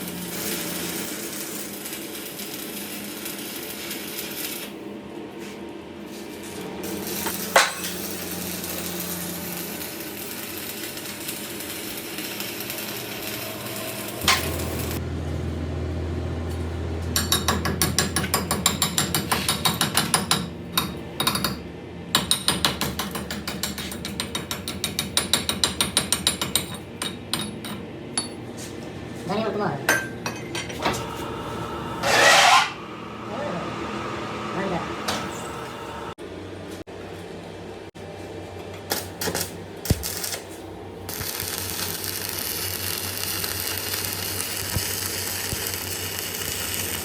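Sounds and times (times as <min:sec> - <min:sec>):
low machine hum: 0:12.6 - 0:19.2, 0:26.6 - 0:38.8
rapid metal tool strokes: 0:32.0 - 0:32.8.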